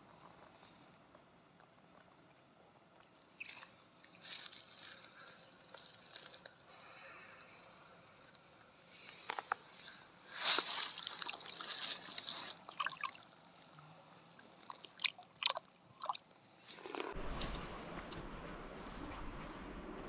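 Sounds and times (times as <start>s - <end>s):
water sloshing and splashing: 10.5s - 17.2s
short sharp splashes: 10.9s - 13.2s, 14.6s - 16.2s.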